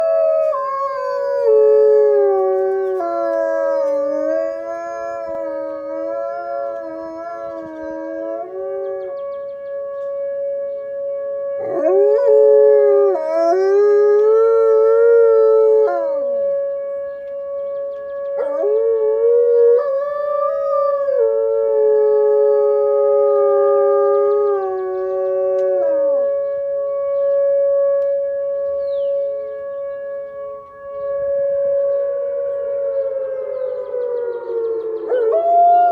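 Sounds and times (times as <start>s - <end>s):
wolves howling: 0.0s - 10.3s, 11.6s - 16.6s, 18.2s - 26.4s, 32.2s - 35.9s.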